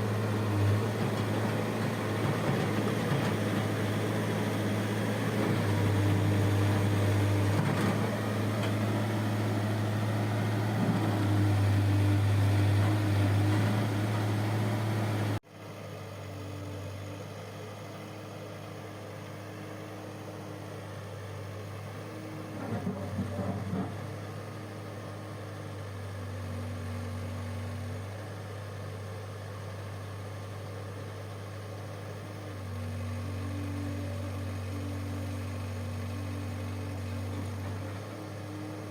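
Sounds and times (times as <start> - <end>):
diesel engine running: 0.0 - 15.4.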